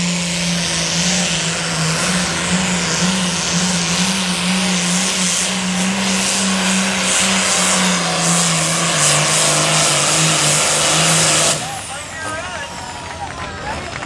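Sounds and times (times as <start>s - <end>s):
tractor diesel engine revving: 0.0s - 14.0s.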